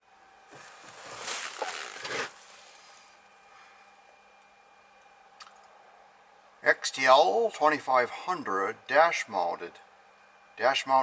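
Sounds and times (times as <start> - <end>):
faint steady hum: 0.0 - 11.0
rustling and scraping handling noise: 0.5 - 3.8.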